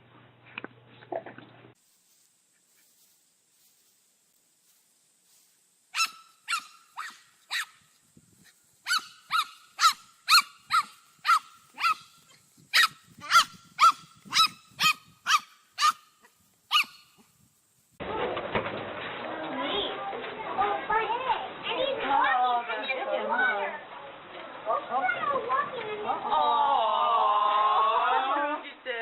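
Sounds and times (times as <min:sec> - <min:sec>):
dog barking in high yaps: 0:05.9 - 0:07.8, 0:08.8 - 0:17.2.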